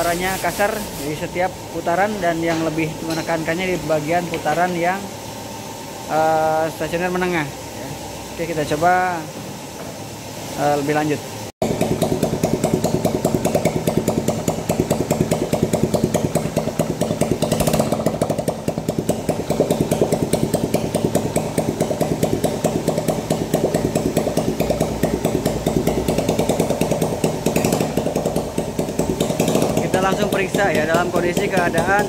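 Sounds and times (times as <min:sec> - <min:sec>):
motorcycle engine idling roughly: 0:11.6 - 0:32.0.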